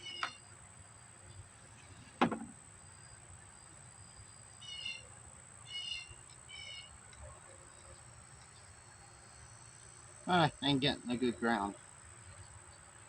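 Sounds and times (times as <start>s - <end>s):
faint high whine: 0.0s - 13.0s
sharp knock: 2.2s - 2.5s.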